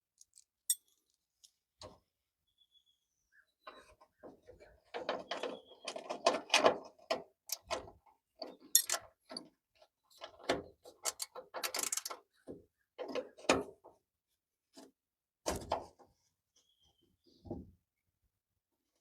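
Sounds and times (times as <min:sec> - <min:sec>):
metallic clicks and clanks of tools: 0:00.2 - 0:01.6, 0:04.9 - 0:09.5, 0:10.2 - 0:12.2.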